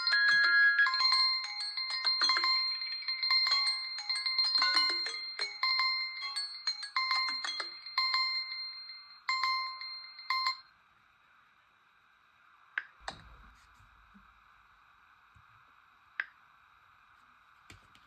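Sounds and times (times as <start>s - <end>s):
phone alarm chime: 0.0s - 10.7s.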